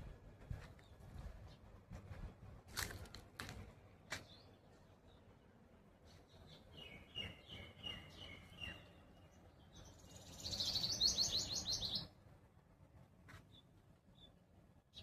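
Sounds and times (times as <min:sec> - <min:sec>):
songbirds chirping: 0:00.0 - 0:15.0.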